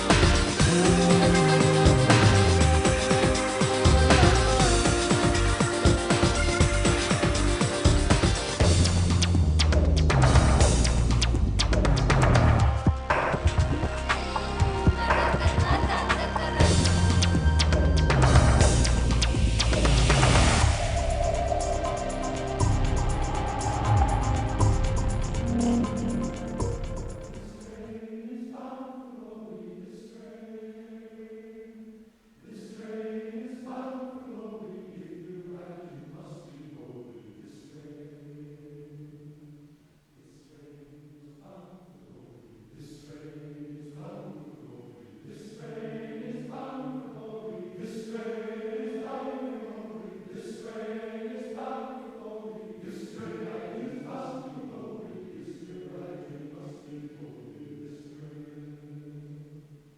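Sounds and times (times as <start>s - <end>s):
men's chorus singing a cappella: 0.0s - 9.0s, 12.4s - 39.6s, 40.2s - 59.8s.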